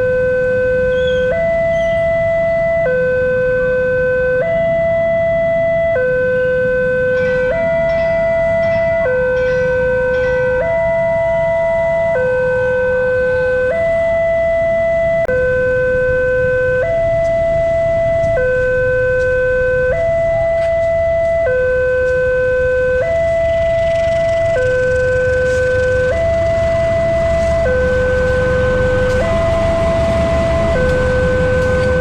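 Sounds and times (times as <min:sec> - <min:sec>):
two-tone warning siren: 0:00.0 - 0:32.0
low rumble: 0:22.5 - 0:32.0.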